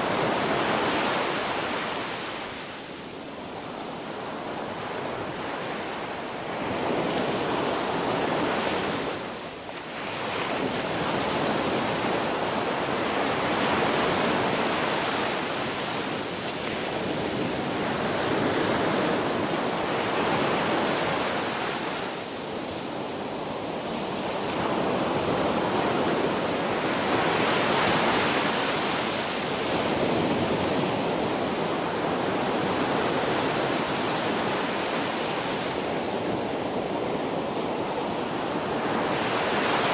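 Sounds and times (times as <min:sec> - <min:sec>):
ocean waves breaking on beach: 0:00.0 - 0:39.9
wind: 0:00.0 - 0:39.9.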